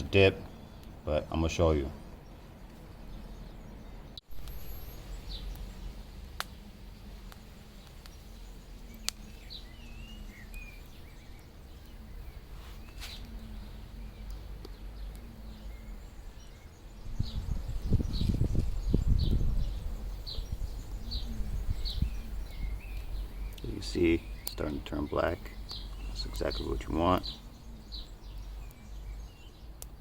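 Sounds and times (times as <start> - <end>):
steady low rumble: 2.0 - 30.0
faint bird chirps: 3.0 - 29.8
sharp clicks: 24.4 - 24.7.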